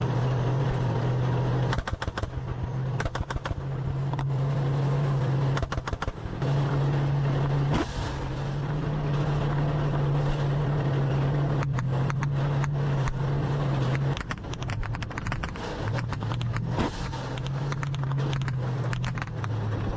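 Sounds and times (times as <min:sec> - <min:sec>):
tank engine droning: 0:00.0 - 0:19.9
sharp clicks: 0:01.6 - 0:02.4, 0:03.0 - 0:04.3, 0:05.5 - 0:06.2, 0:11.6 - 0:13.2, 0:13.8 - 0:19.6.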